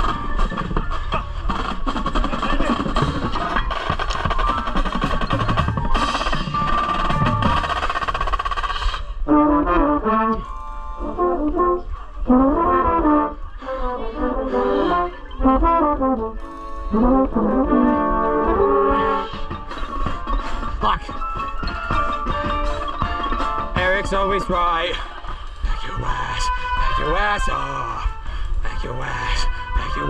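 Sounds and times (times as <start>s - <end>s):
percussion: 0.0s - 9.0s, 19.0s - 27.6s
brass band playing: 9.2s - 19.6s.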